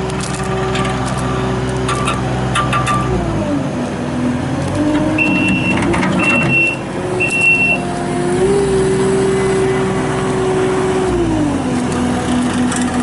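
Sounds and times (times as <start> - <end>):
diesel engine revving: 0.0 - 13.0
backup alarm beeps: 5.2 - 7.8.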